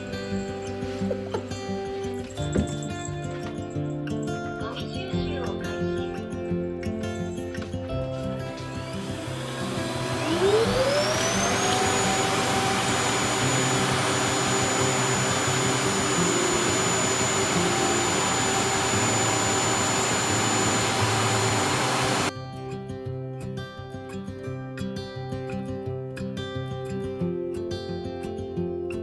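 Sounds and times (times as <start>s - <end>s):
robot vacuum motor whine: 8.6s - 22.3s.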